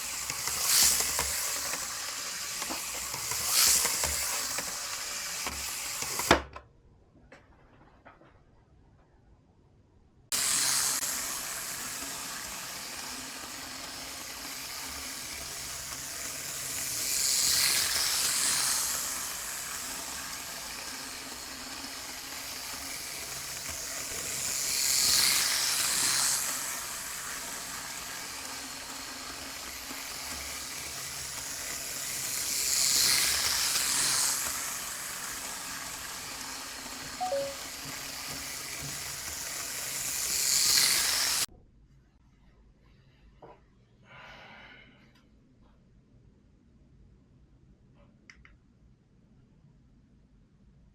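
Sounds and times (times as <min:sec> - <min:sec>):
model train running on track: 0:00.0 - 0:06.4, 0:10.3 - 0:41.5.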